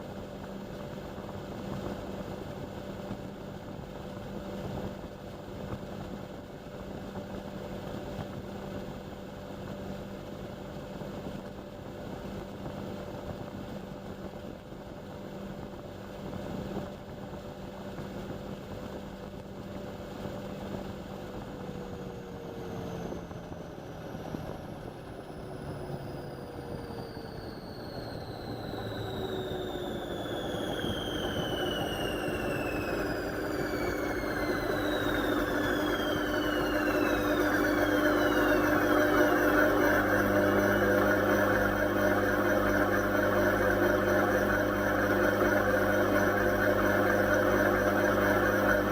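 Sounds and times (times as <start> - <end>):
washing machine running: 0.0 - 48.9
motor whine falling in pitch: 20.6 - 48.9.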